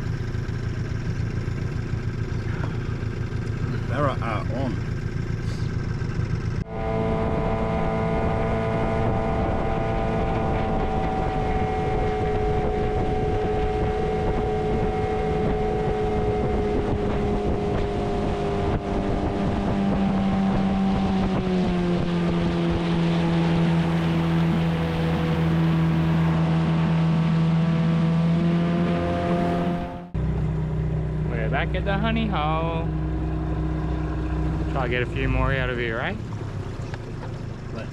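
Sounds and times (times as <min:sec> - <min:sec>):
outboard motor running: 0:00.0 - 0:37.9
wind on microphone: 0:07.2 - 0:26.4.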